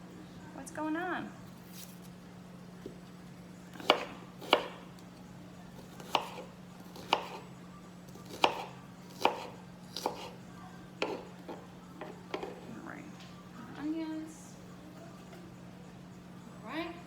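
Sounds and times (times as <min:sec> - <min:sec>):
knife chopping on cutting board: 0:03.8 - 0:04.8, 0:05.8 - 0:07.4, 0:08.2 - 0:10.4, 0:11.0 - 0:12.6.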